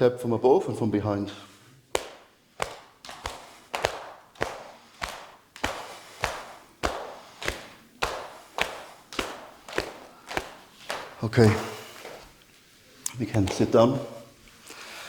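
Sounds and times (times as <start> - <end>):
hands tapping the body: 1.9 - 12.4, 13.1 - 14.0.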